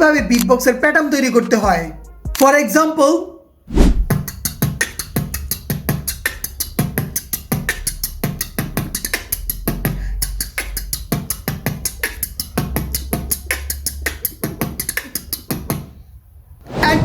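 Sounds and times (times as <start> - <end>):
beatboxing: 4.1 - 16.0.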